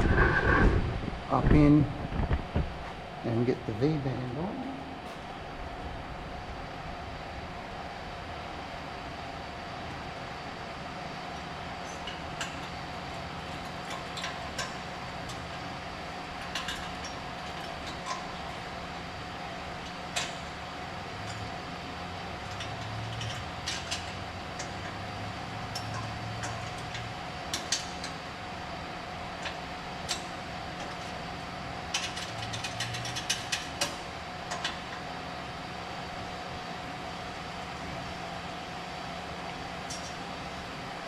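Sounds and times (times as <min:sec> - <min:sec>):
background hum: 0:00.0 - 0:41.0
ratchet clicking: 0:31.9 - 0:34.8.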